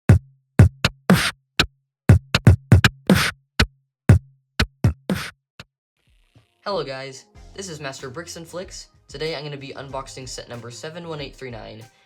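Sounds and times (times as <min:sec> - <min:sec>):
drum-machine beat: 0:00.0 - 0:05.3.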